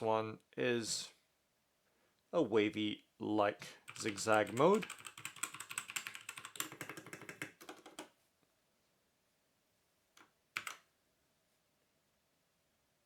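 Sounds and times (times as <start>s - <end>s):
mechanical keyboard typing: 3.9s - 8.1s, 10.6s - 10.8s.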